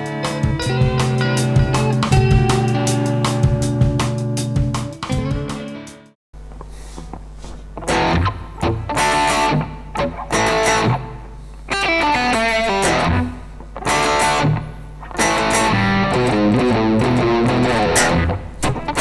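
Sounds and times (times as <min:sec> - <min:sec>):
electric guitar through amplifier: 0:00.0 - 0:19.0
low amplifier hum: 0:06.4 - 0:19.0.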